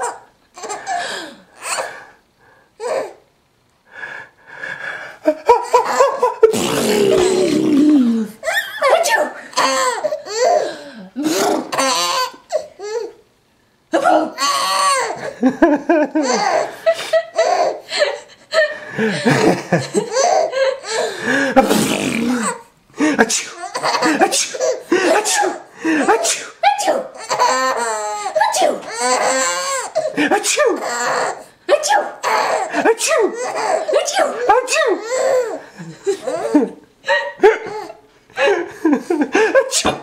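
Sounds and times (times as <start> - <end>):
person giggling: 5.2 - 9.0, 15.2 - 26.4, 35.6 - 40.0.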